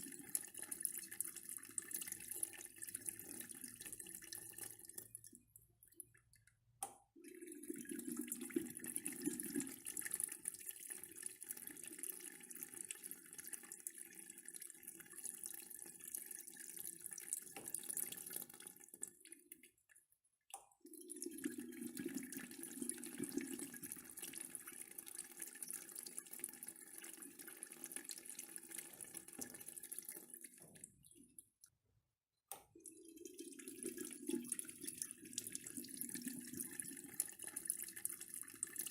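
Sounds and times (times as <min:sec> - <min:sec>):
urinal flushing water rushing: 0:07.2 - 0:10.3, 0:32.8 - 0:38.9.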